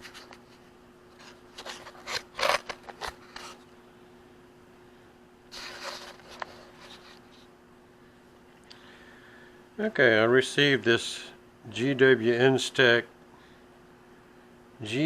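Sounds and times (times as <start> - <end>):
rubbing and scraping handling noise: 0.0 - 3.7, 5.5 - 7.6
faint steady hum: 0.0 - 15.0.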